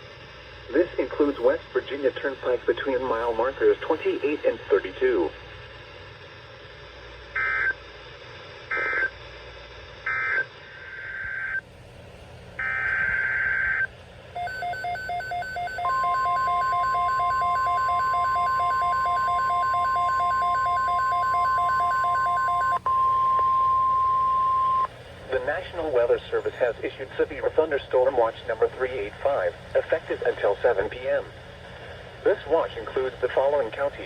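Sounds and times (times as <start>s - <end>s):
steady radio alarm tone: 0.7s - 5.3s, 7.3s - 7.9s, 8.7s - 9.2s, 10.0s - 11.6s, 12.6s - 31.3s
fast pulsing beep: 14.4s - 24.9s.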